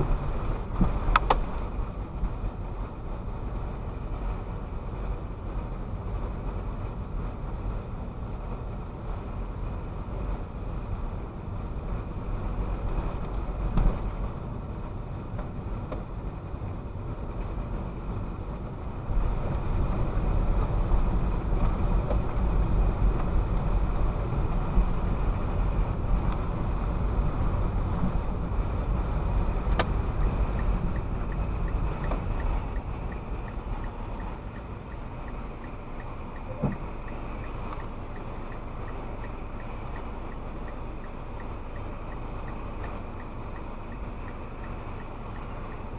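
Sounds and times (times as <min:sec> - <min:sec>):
tyre and road rumble: 0:00.0 - 0:45.9.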